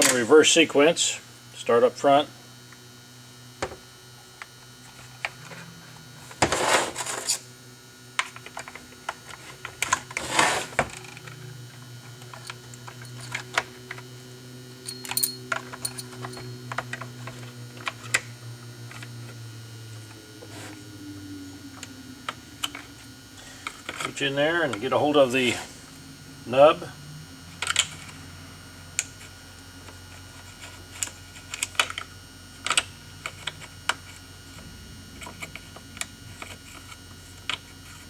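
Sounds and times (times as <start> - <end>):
steady low hum: 0.0 - 38.0
scraping rustles: 4.9 - 7.5, 8.7 - 11.3
small parts clicking and scraping: 12.1 - 14.1, 14.8 - 18.2, 27.6 - 28.2, 30.1 - 34.6, 35.2 - 38.0.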